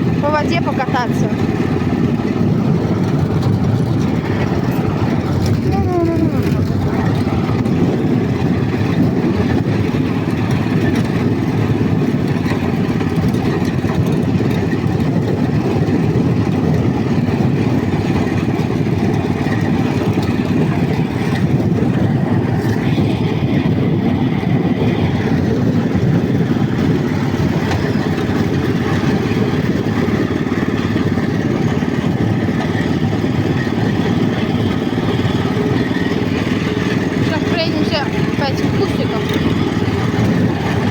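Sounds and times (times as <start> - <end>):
tractor engine running steadily: 0.0 - 40.9.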